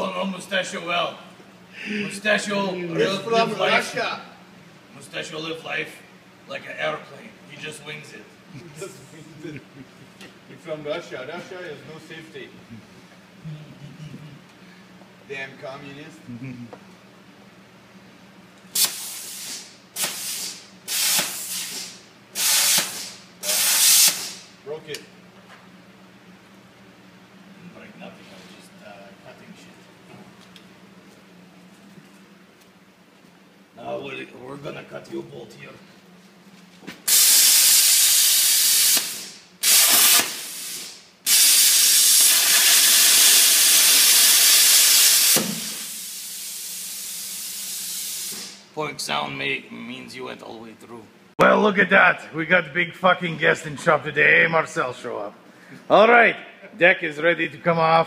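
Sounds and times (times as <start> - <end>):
plasma cutter hissing: 18.8 - 24.5, 37.1 - 48.6.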